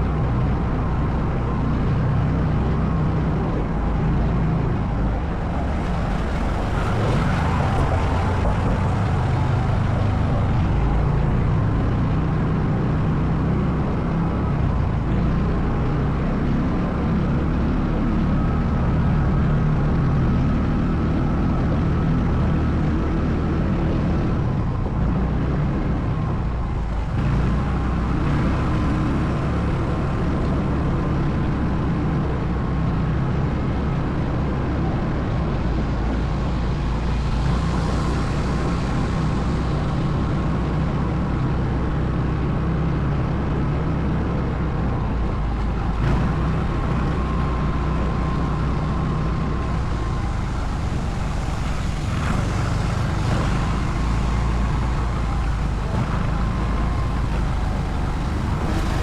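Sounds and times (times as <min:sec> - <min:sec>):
atv engine running: 0:37.4 - 0:59.0.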